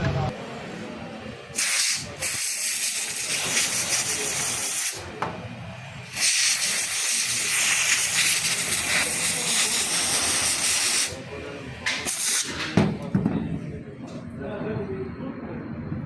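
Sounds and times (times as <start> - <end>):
hiss of spray or escaping gas: 1.6 - 5.0, 6.1 - 11.2, 12.1 - 12.6.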